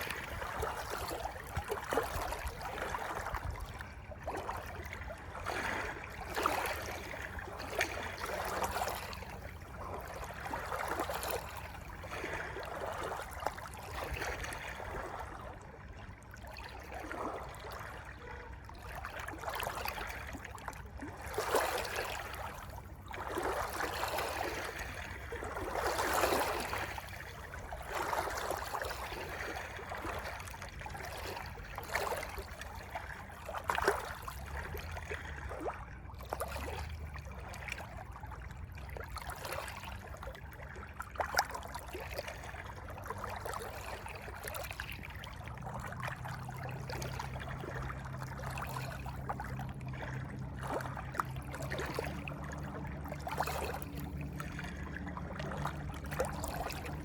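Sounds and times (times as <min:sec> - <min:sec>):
flowing stream water: 0:00.0 - 0:57.0
steady low rumble: 0:49.0 - 0:57.0.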